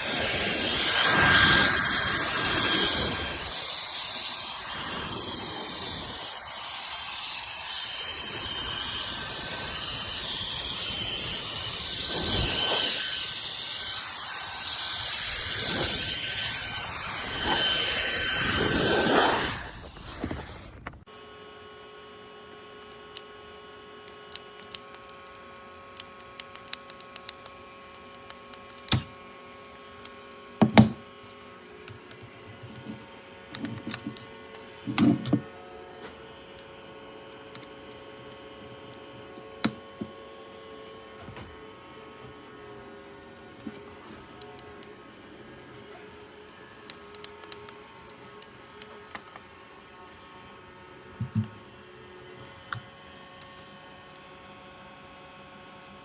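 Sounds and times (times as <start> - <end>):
electric air duster blowing: 0.0 - 20.8.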